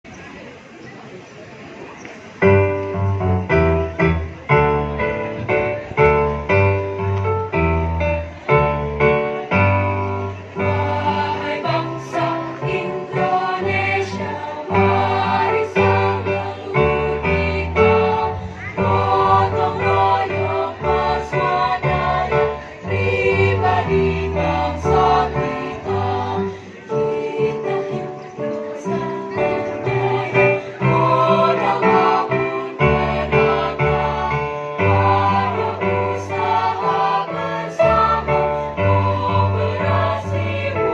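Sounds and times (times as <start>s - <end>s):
piano accompaniment: 2.4s - 40.9s
choir singing in parts: 9.6s - 40.9s.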